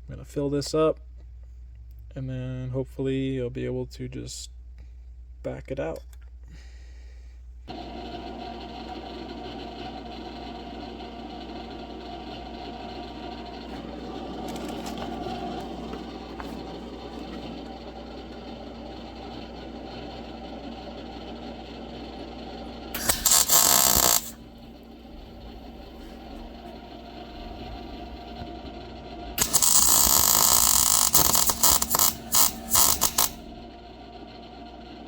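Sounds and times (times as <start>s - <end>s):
steady low hum: 11.6s - 35.0s
electric arc welding: 22.9s - 28.1s, 29.3s - 33.6s.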